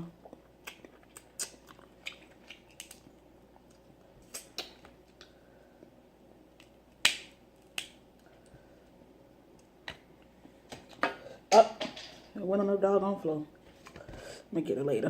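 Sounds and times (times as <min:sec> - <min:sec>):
crab shell cracking: 0:00.6 - 0:05.4, 0:06.6 - 0:08.0.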